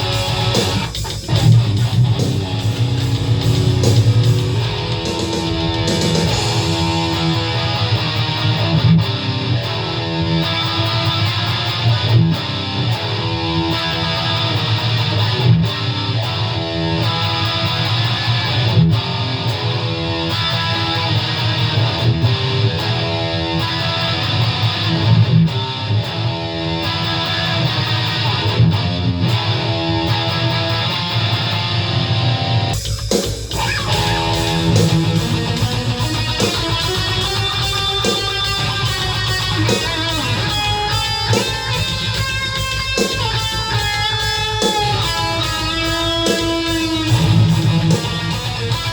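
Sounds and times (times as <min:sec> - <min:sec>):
drum machine metal beat: 0:00.0 - 0:09.3, 0:32.7 - 0:48.9
distorted electric guitar riff: 0:00.0 - 0:48.9.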